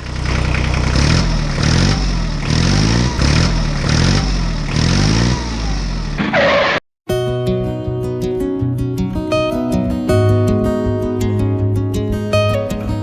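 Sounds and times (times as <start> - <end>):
tractor engine revving: 0.0 - 6.8.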